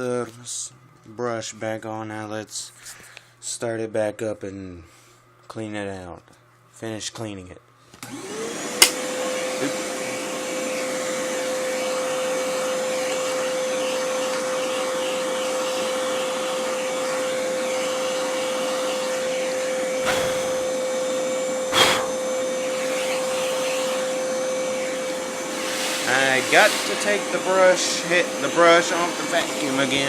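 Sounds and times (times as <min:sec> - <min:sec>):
hand vacuum motor whine: 0:08.0 - 0:30.0.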